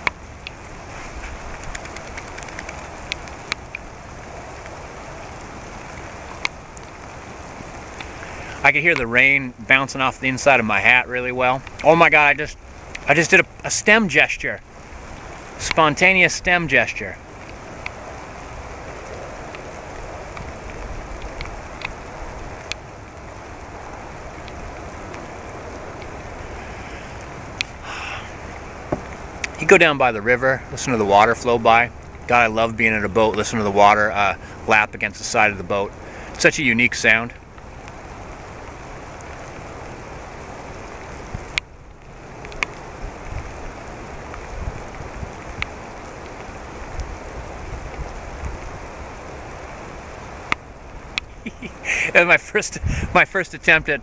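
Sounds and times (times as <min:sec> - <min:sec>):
sharp raindrop hits: 0:00.0 - 0:10.5
rain falling: 0:00.0 - 0:54.0
drops ticking close by: 0:01.5 - 0:03.9.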